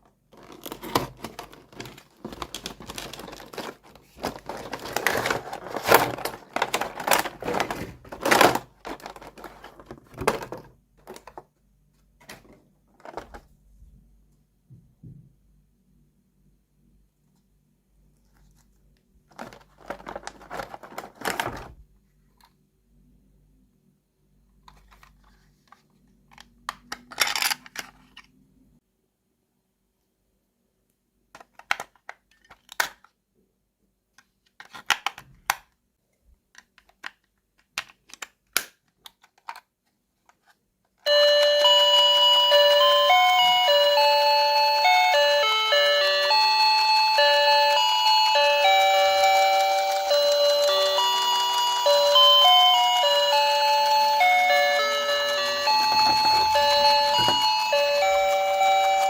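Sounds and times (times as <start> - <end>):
plastic toy pieces clicking: 26.4 - 28.2
electronic beeping chime melody: 41.1 - 59.0.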